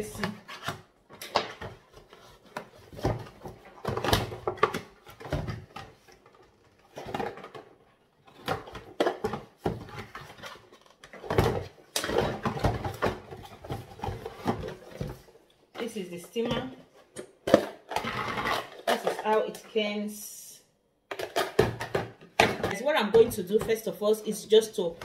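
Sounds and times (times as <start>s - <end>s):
plastic packaging rustling: 0.0s - 19.4s.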